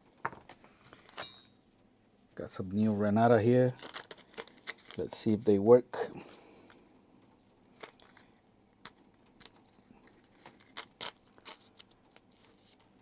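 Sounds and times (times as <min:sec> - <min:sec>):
clicks handling batteries and packaging: 0:03.8 - 0:05.0.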